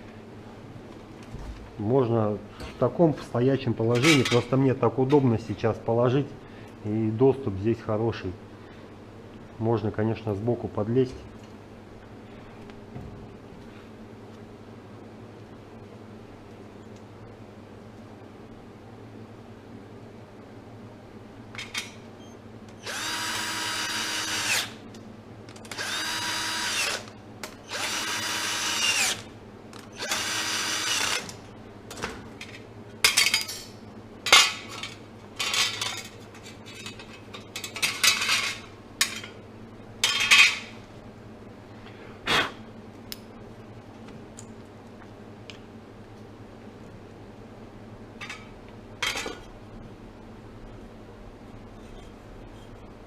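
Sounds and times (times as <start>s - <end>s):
power drill-driver whining: 22.8s - 24.7s, 25.7s - 29.2s, 29.9s - 31.2s.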